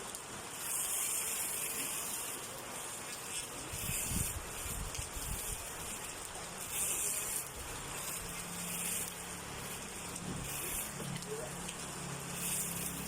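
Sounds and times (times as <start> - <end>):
battery grass cutter running: 0.5 - 13.0.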